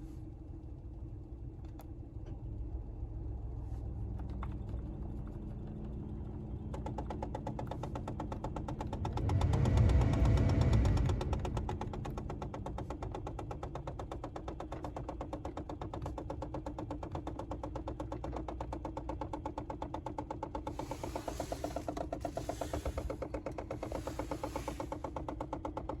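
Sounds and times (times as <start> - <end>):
car heater knocking: 5.8 - 26.0
low hum: 8.9 - 13.1.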